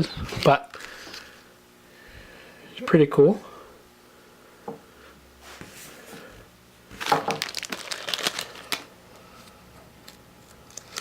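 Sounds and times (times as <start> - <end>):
plastic packaging crinkling: 6.9 - 11.0.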